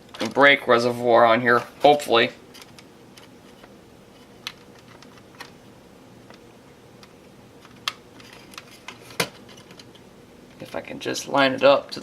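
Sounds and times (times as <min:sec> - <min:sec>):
plastic parts clicking: 0:04.4 - 0:05.6.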